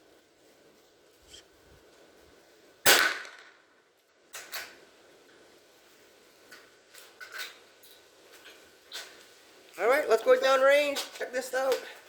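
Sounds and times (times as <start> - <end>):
rifle shot with echo: 2.9 - 3.6.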